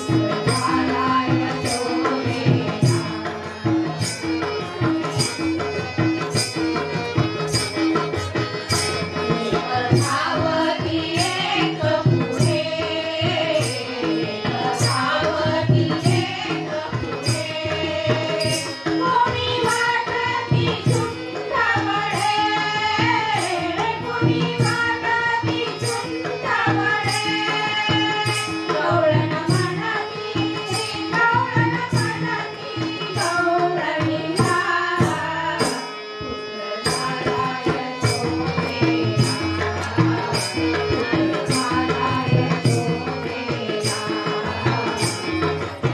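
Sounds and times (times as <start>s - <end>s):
women singing folk song: 0.0s - 3.5s, 9.0s - 45.9s
hand drum: 37.0s - 45.9s.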